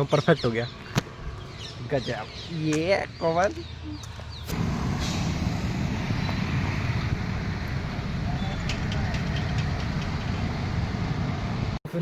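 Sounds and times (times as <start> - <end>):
low rumbling noise: 4.5 - 11.8.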